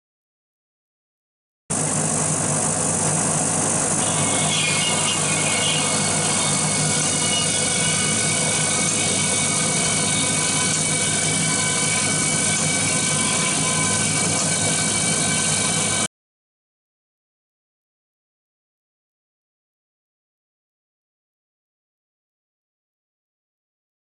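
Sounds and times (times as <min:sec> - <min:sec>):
power tool motor whining: 0:01.7 - 0:16.1.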